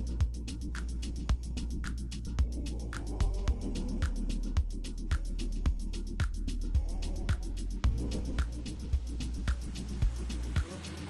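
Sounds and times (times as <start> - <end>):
electronic beat music: 0.0 - 11.0.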